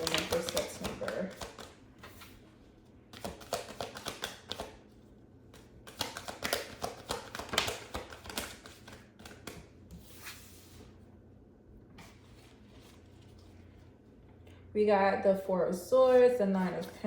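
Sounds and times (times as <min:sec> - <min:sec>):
cards being shuffled by hand: 0:00.0 - 0:02.4, 0:03.1 - 0:04.9, 0:05.5 - 0:10.9.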